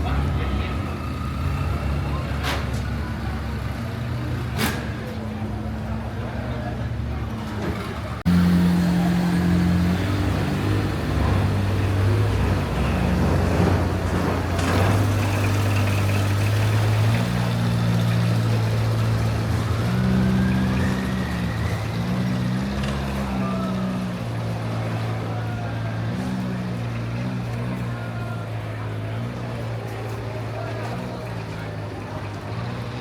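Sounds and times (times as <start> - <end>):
boat engine running: 8.2 - 27.6.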